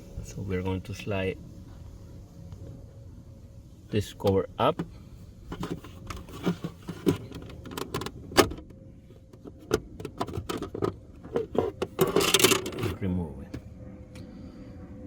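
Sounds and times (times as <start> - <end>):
plastic scraping rattle: 5.5 - 8.6, 9.4 - 13.0.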